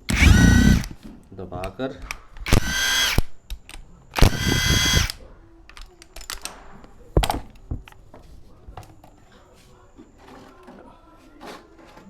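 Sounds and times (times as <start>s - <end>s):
cordless drill whirring: 0.0s - 1.0s, 2.5s - 3.3s, 4.2s - 5.2s.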